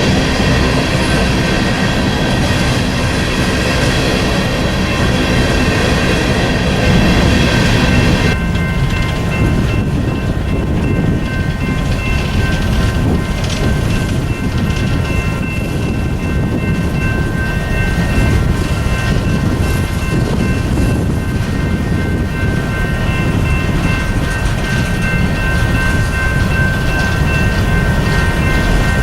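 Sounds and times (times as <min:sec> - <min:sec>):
freight train wheels rumbling: 0:00.0 - 0:29.0.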